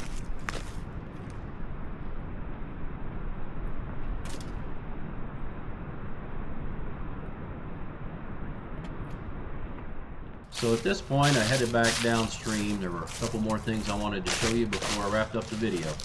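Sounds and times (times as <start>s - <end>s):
steady rushing noise: 10.5s - 16.0s.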